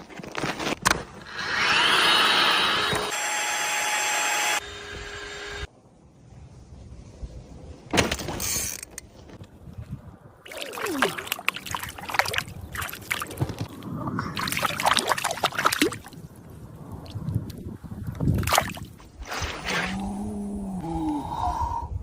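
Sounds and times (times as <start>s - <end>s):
water splashing and sloshing: 10.4s - 20.0s.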